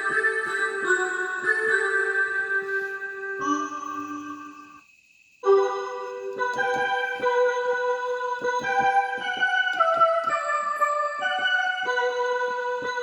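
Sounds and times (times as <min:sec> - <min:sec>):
synthesizer electric piano chords: 0:05.4 - 0:13.0.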